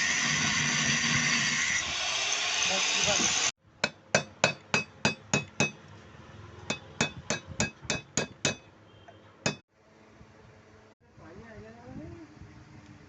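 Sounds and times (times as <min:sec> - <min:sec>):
sharp metallic taps: 0:03.8 - 0:05.8, 0:06.7 - 0:08.7, 0:09.4 - 0:09.6.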